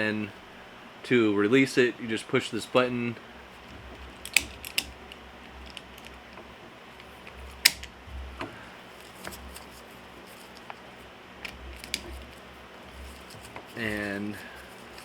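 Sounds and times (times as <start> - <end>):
ratchet strap clicks and rattles: 4.0 - 6.2, 7.0 - 7.9, 11.4 - 12.4.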